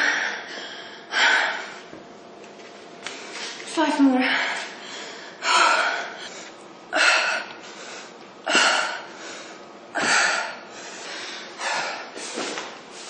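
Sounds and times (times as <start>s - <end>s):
woman exhaling forcefully: 4.3s - 6.3s, 8.5s - 13.0s.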